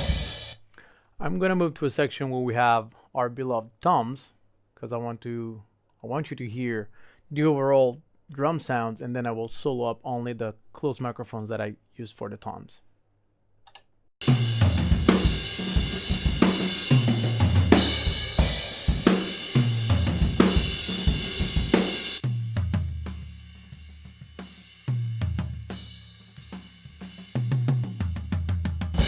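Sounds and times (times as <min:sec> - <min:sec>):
acoustic drum kit groove: 0:00.0 - 0:00.6, 0:14.2 - 0:29.0.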